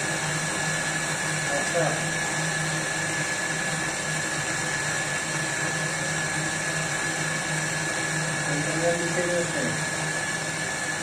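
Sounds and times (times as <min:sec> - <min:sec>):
mechanical hum: 0:00.0 - 0:11.0.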